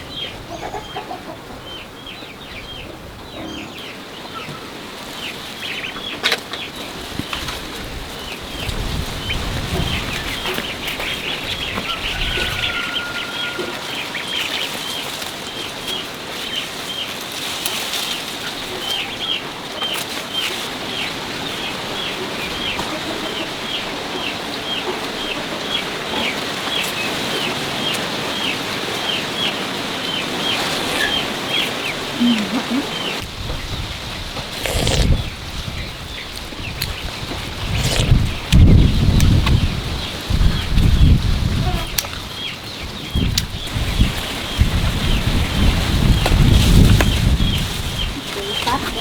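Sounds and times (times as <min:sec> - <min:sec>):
bird chirping: 0:29.1 - 0:33.2.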